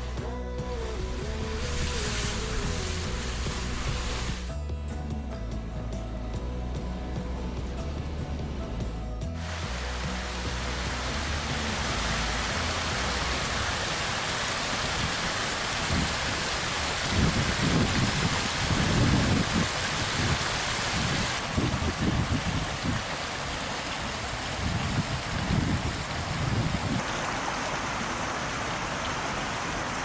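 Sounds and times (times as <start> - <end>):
wind buffeting microphone: 0.0 - 27.1
hiss of wind: 9.4 - 30.0.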